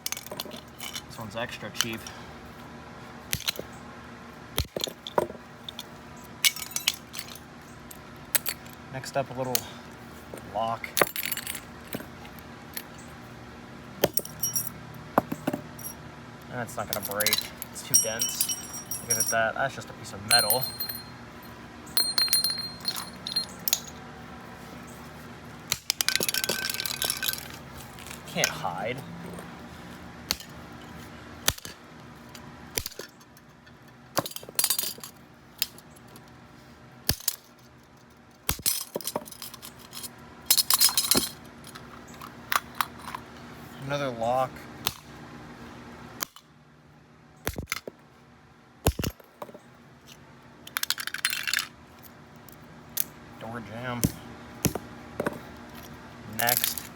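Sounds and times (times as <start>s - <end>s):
small metal parts clinking: 0.0s - 2.2s, 4.6s - 8.9s, 10.3s - 13.1s, 14.0s - 16.0s, 16.6s - 24.0s, 25.7s - 29.6s, 30.3s - 36.3s, 37.1s - 43.3s, 48.9s - 53.1s, 54.6s - 56.9s.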